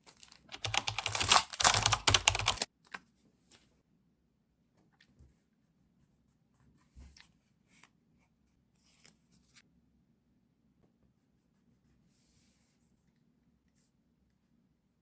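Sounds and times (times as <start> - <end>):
paper rustling: 0.0 - 2.7.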